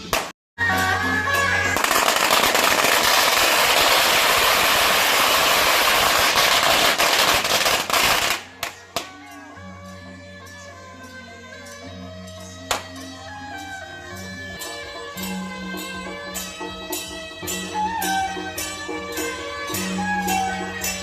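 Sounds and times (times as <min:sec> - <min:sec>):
firecrackers crackling: 0:00.0 - 0:00.3, 0:01.4 - 0:09.2.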